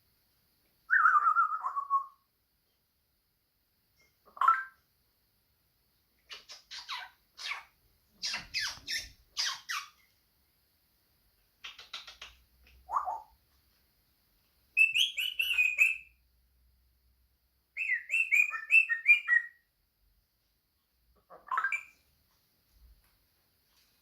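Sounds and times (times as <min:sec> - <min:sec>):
parrot chirping whistled notes: 0:00.9 - 0:02.2, 0:14.8 - 0:16.2, 0:17.8 - 0:19.6.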